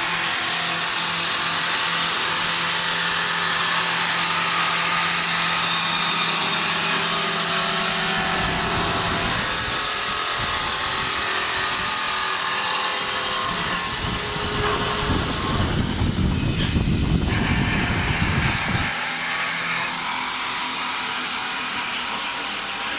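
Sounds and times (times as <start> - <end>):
lathe cutter hissing on wood: 0.0 - 22.9
motor hum: 0.0 - 22.9
heavy rumble: 13.5 - 18.9.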